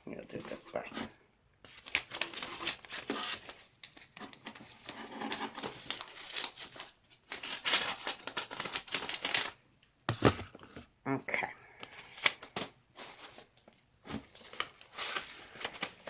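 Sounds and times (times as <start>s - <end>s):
paper envelope being torn open: 1.7s - 9.6s.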